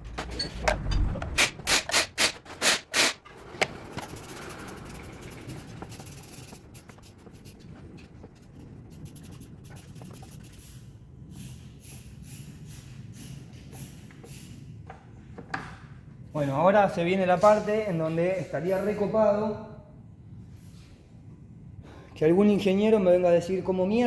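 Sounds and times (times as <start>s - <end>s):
metal knocks and clanks: 0.0s - 2.6s.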